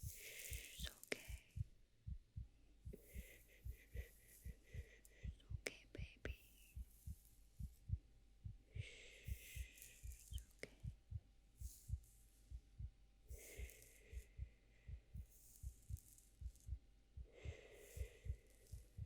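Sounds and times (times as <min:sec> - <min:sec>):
heartbeat double thump: 0:01.3 - 0:06.1, 0:06.8 - 0:10.2, 0:10.8 - 0:13.0, 0:14.1 - 0:17.4, 0:18.0 - 0:19.0.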